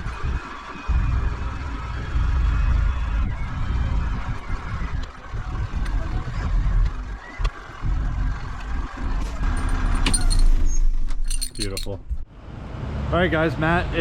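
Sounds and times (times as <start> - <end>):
light clinks: 9.4 - 12.0.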